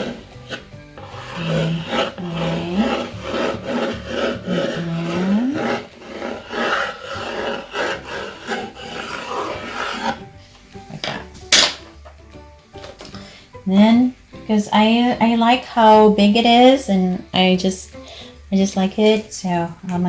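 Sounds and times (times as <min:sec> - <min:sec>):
pencil scratching on wooden board: 0:00.0 - 0:10.3.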